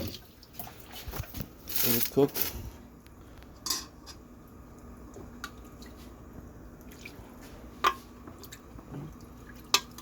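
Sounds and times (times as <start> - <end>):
faint steady hum: 0.0 - 10.0
cookware and utensils clinking: 3.6 - 4.2.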